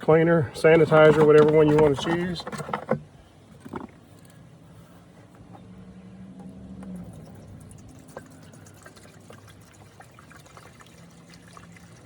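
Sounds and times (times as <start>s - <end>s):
liquid trickling into plastic tank: 7.0s - 12.0s.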